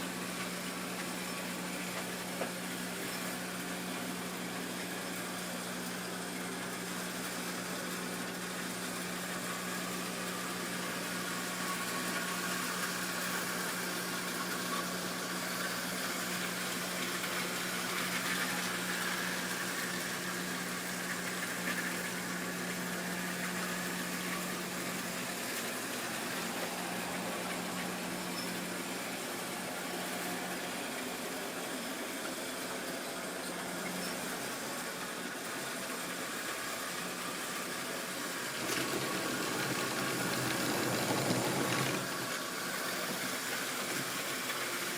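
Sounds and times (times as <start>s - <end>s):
electric motor hum: 16.1s - 31.7s, 38.5s - 42.5s
wheels rattling on rails: 38.6s - 42.3s.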